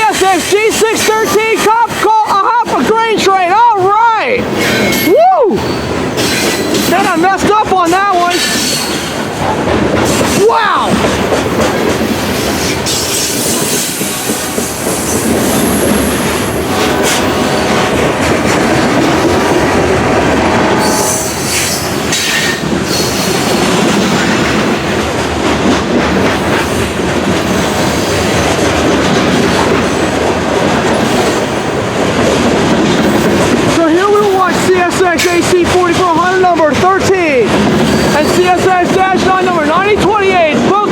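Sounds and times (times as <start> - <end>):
freight train wheels rumbling: 0.0 - 40.9
wheels clattering over rail joints: 4.3 - 40.9
wheel squeals: 4.5 - 6.9, 37.6 - 38.7.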